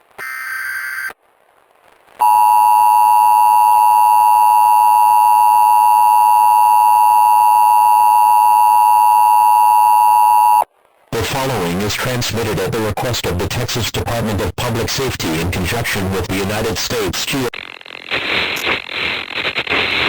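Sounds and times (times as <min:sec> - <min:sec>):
steady electronic alarm tone: 0:02.2 - 0:10.6.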